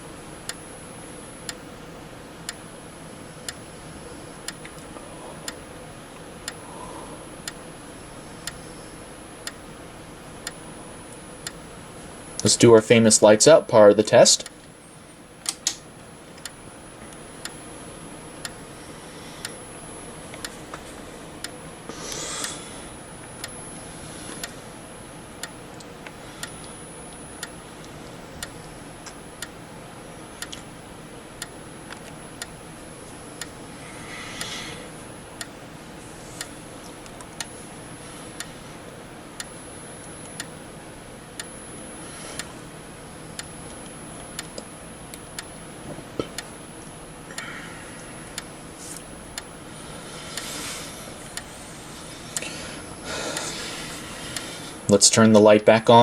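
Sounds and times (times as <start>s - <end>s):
strobe clicking: 2.4s - 2.7s, 3.4s - 3.8s, 4.4s - 5.8s, 7.4s - 7.7s, 8.4s - 8.7s, 9.4s - 9.8s, 10.4s - 11.7s, 15.4s - 17.7s, 18.4s - 18.7s, 23.2s - 24.6s, 25.4s - 27.7s, 28.3s - 29.6s, 31.4s - 32.6s, 33.4s - 33.6s, 35.3s - 35.6s, 36.4s - 37.6s, 39.4s - 40.6s, 41.4s - 42.5s, 43.3s - 45.7s, 48.4s - 50.5s, 51.2s - 52.5s.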